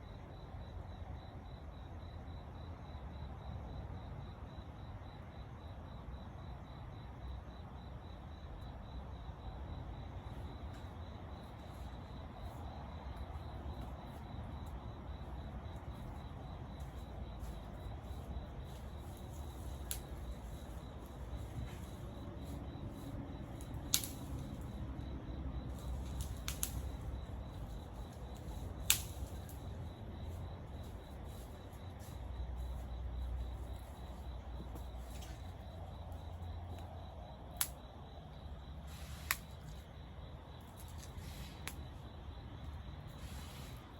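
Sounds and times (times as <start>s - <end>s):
crickets chirping: 0.0s - 43.9s
campfire rumbling: 9.5s - 43.9s
burning wood popping: 16.8s - 24.8s, 25.6s - 29.8s.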